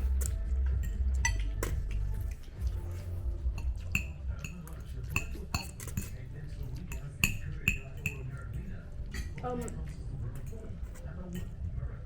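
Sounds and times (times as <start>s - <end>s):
cutlery clinking on plates: 0.0s - 2.4s, 3.6s - 9.8s.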